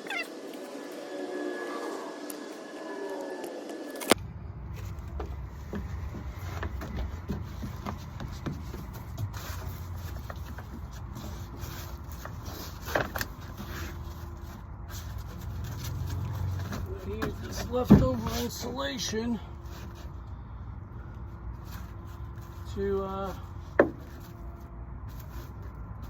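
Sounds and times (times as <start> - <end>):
steady low rumble: 0.5 - 11.2
wooden boards scraping and knocking: 4.8 - 18.7, 23.6 - 24.4.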